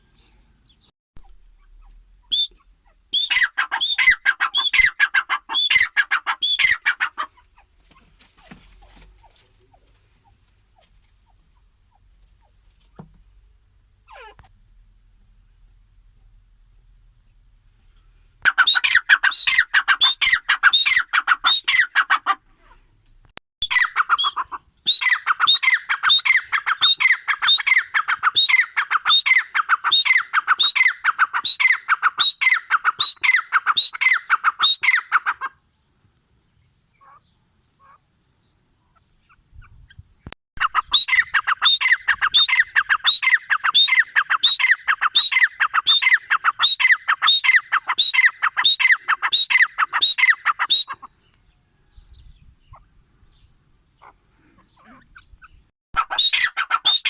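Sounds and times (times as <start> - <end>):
francolin calling shrilly: 1.2 - 7.3, 18.5 - 22.2, 23.6 - 35.5, 40.6 - 51.1, 54.0 - 57.0.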